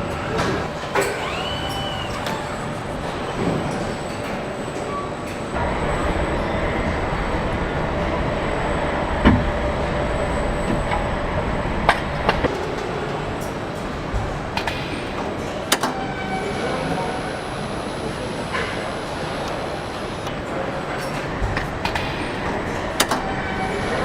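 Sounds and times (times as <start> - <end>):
machinery rumble and hum: 0.0 - 24.0
sharp clanks and clicks: 11.9 - 16.1, 20.2 - 24.0.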